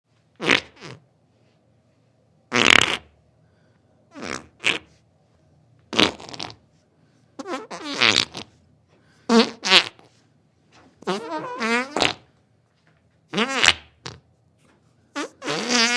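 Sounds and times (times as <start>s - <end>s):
farts: 0.4s - 1.0s, 2.5s - 3.1s, 4.1s - 4.9s, 5.9s - 6.6s, 7.4s - 8.5s, 9.3s - 10.1s, 10.8s - 12.3s, 13.3s - 14.2s, 15.1s - 15.9s.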